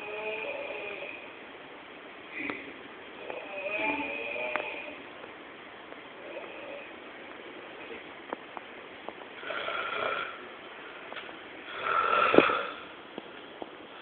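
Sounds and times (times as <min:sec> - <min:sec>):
person snoring: 0:00.0 - 0:01.3, 0:02.4 - 0:05.0, 0:09.4 - 0:10.4, 0:11.7 - 0:12.9.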